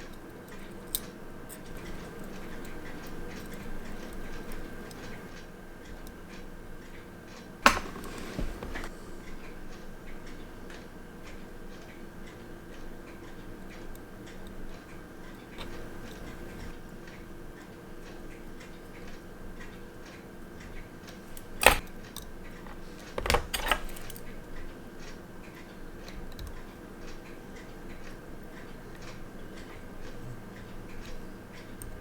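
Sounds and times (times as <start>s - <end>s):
faint steady ticking: 0.0s - 32.0s
low equipment hum: 15.5s - 16.8s
metal tools clicking: 21.6s - 24.3s.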